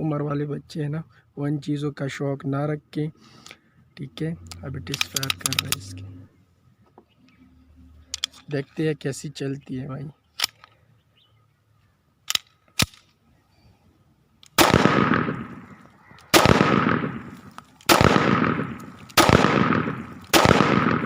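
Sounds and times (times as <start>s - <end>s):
pistol clicks: 4.5s - 5.8s, 10.4s - 10.8s, 12.2s - 13.2s, 14.4s - 21.0s
loud pistol shots echoing: 14.6s - 21.0s.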